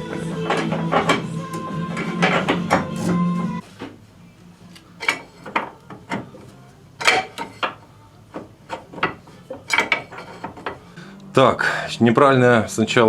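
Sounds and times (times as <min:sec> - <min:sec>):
tools knocking and clanking: 0:00.1 - 0:03.2, 0:05.0 - 0:10.8.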